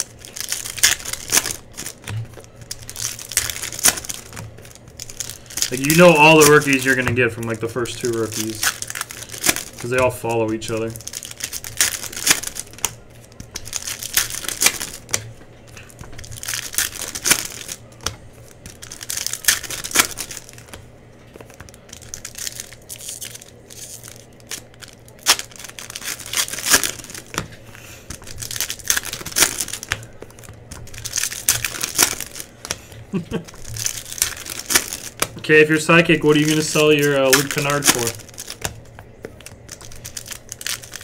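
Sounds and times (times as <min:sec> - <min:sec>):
card pack wrappers crinkling: 0:00.0 - 0:41.0.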